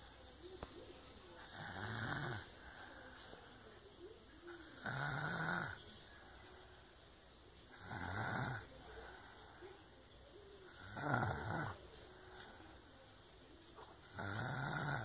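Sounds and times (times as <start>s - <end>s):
faint breaths: 0.0s - 15.0s
child snoring loudly: 1.5s - 2.4s, 4.6s - 5.8s, 7.8s - 8.7s, 10.7s - 11.8s, 14.1s - 15.0s.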